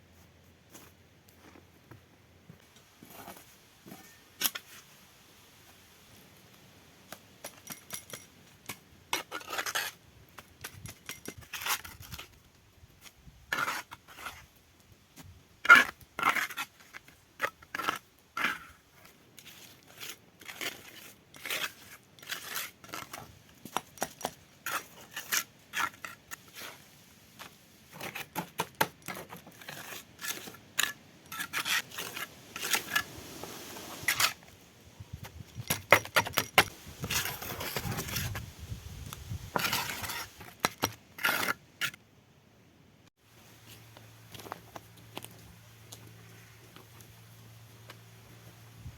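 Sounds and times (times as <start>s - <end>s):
clicks and scrapes of small objects: 7.1s - 14.5s, 15.2s - 34.5s, 35.2s - 38.4s, 39.1s - 42.0s, 43.6s - 47.1s.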